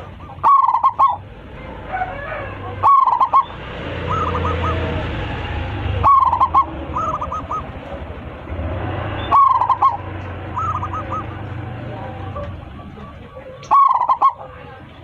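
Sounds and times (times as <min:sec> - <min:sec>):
dove cooing: 0:00.0 - 0:05.2, 0:05.9 - 0:08.0, 0:09.2 - 0:14.8.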